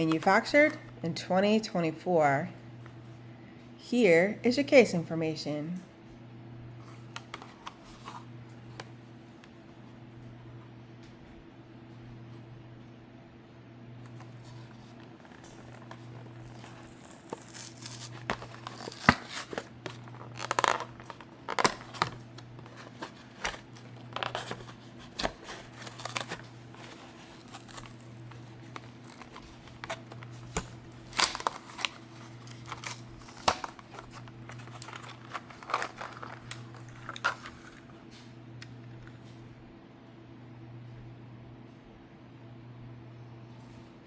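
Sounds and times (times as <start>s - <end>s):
steady low hum: 0.0s - 44.0s
plastic packaging tearing and crinkling: 15.2s - 37.9s.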